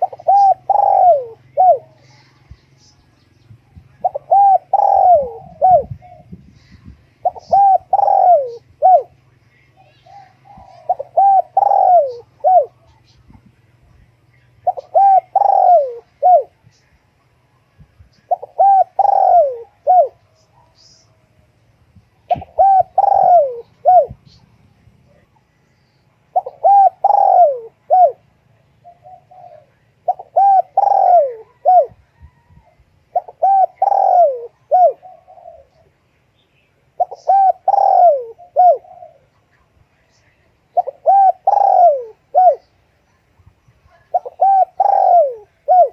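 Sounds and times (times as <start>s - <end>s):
dove cooing: 0.0s - 2.9s, 3.8s - 9.2s, 9.8s - 13.3s, 14.6s - 16.6s, 18.1s - 21.1s, 22.2s - 24.5s, 26.3s - 36.0s, 36.9s - 39.5s, 40.7s - 42.8s, 43.9s - 45.9s.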